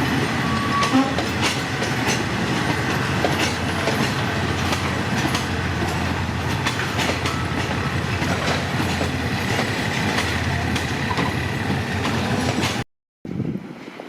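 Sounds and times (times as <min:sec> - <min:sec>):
train wheels clacking over rails: 0:00.0 - 0:12.8
thin squeal from wheels: 0:00.4 - 0:01.2.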